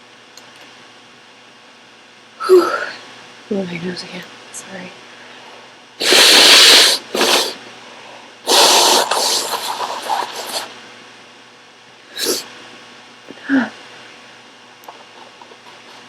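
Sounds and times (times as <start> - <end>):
woman sniffing: 6.0 - 7.6, 8.5 - 10.7, 12.1 - 12.5
woman sneezing: 12.2 - 12.5.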